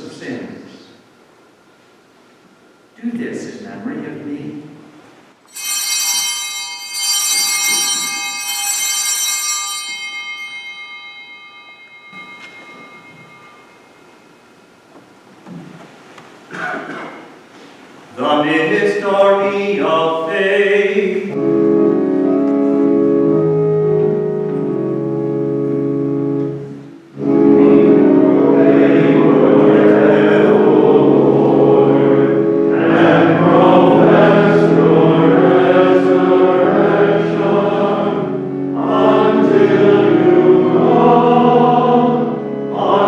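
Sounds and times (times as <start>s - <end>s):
small handbells ringing: 5.5s - 14.2s
church organ chords: 5.5s - 15.2s, 18.2s - 43.0s
voices singing with organ: 26.0s - 43.0s.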